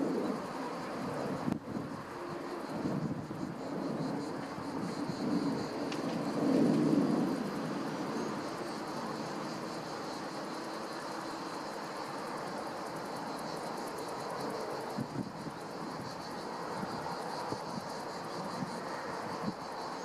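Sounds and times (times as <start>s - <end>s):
distant jet engine rumble: 0.0s - 20.0s.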